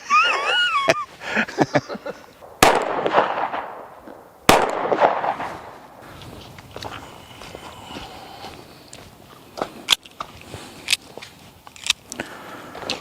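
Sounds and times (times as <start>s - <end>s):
gunshots with rolling echo: 2.4s - 6.1s.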